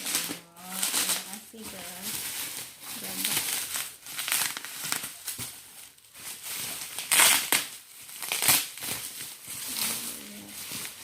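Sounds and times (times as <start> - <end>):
plastic packaging crinkling: 0.0 - 11.0.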